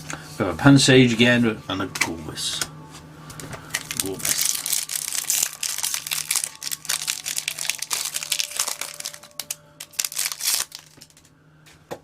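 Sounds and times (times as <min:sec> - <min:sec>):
foil wrapper crinkling: 0:03.8 - 0:11.3.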